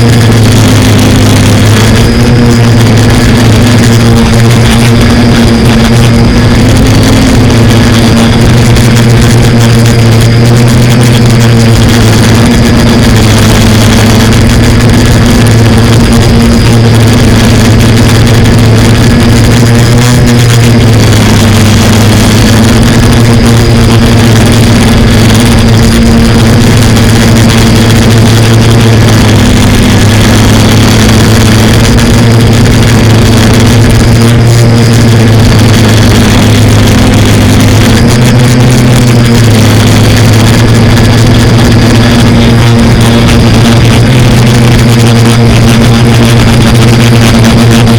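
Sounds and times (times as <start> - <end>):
drone propellers buzzing: 0.0 - 47.9.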